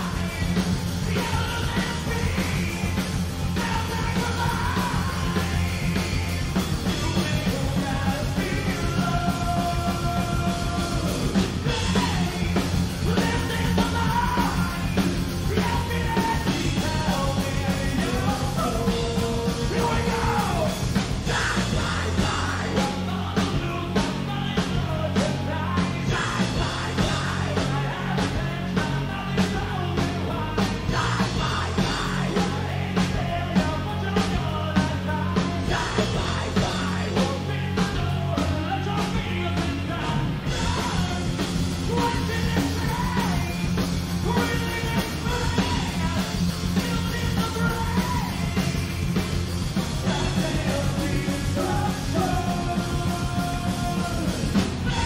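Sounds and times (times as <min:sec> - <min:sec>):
rock band playing live: 0:00.0 - 0:55.0
singer yelling and singing: 0:00.0 - 0:55.0.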